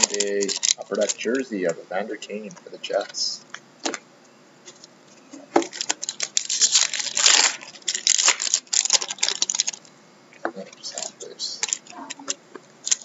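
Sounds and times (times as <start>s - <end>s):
card pack wrapper tearing: 0.0s - 1.8s, 5.6s - 9.8s, 10.8s - 13.0s.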